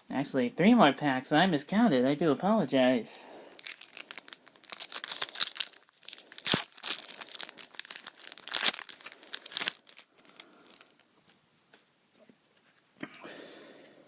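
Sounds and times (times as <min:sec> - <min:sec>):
foil wrapper tearing and crinkling: 0:03.6 - 0:11.1.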